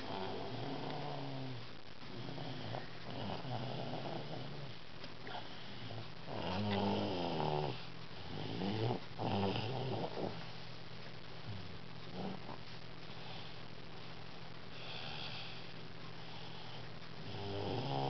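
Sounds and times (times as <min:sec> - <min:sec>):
toddler snoring: 0:00.0 - 0:04.7, 0:05.3 - 0:10.4, 0:17.2 - 0:18.0.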